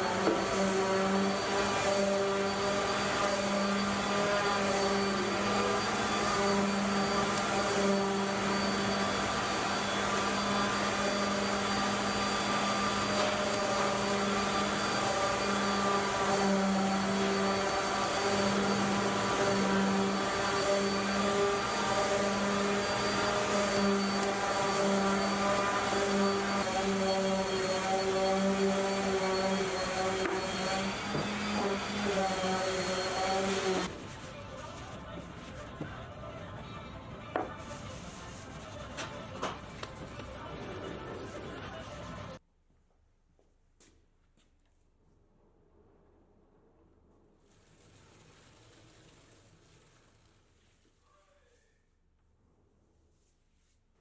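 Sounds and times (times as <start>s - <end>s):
wood lathe running: 0.0s - 33.9s.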